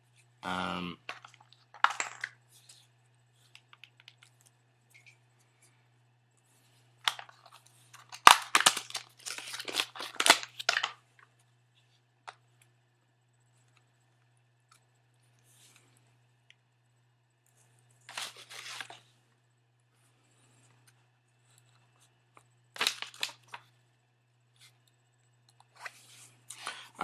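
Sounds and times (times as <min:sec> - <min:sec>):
packaging rustling and tearing: 0:07.9 - 0:10.9, 0:18.1 - 0:19.0, 0:22.8 - 0:23.6.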